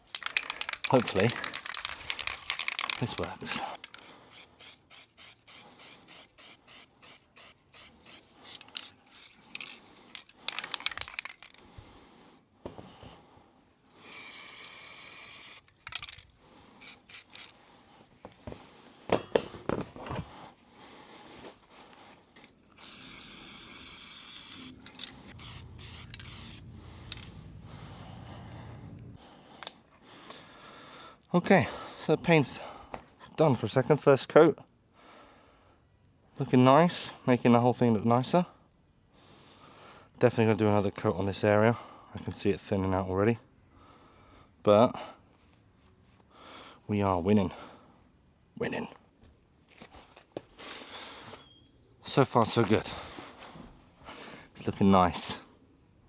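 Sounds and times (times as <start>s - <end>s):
spray can hissing: 0.0s - 11.6s, 14.0s - 16.2s, 16.8s - 17.6s, 22.7s - 29.0s
spray can ball rattling: 0.0s - 11.7s, 14.0s - 17.6s, 22.7s - 27.9s.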